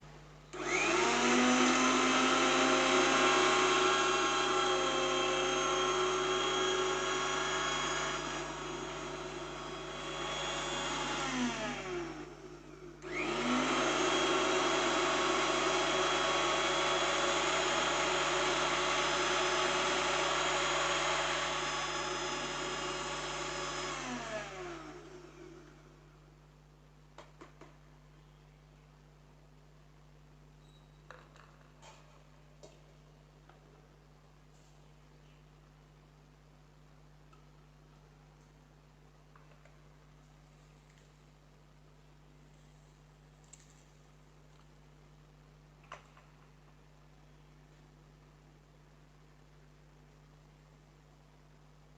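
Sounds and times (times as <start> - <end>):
mixer grinder motor running: 0.6 - 25.9.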